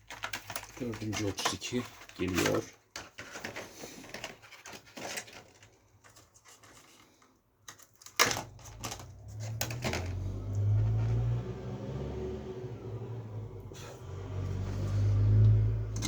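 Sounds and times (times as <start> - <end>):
plastic rustling: 0.0 - 11.0.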